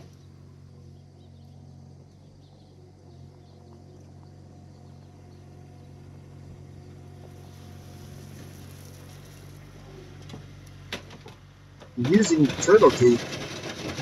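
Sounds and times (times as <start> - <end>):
skid steer engine running: 0.0 - 14.0
hiss: 7.3 - 9.7.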